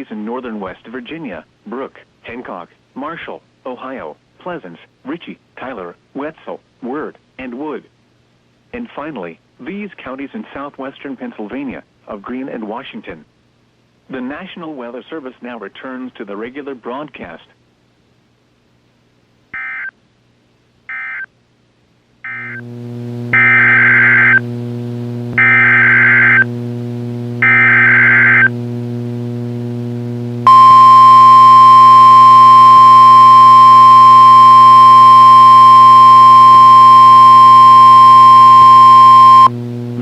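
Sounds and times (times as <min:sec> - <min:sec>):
steady electrical hum: 0:17.2 - 0:40.0
loud steady alarm tone: 0:23.3 - 0:24.4, 0:25.4 - 0:26.5, 0:27.4 - 0:28.5, 0:30.4 - 0:39.5.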